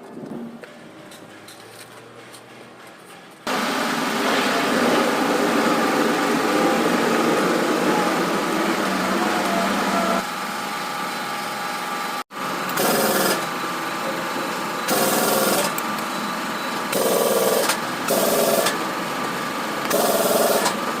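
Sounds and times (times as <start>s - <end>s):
small motor running: 12.7s - 13.6s, 14.8s - 16.3s, 16.9s - 18.9s, 19.8s - 21.0s.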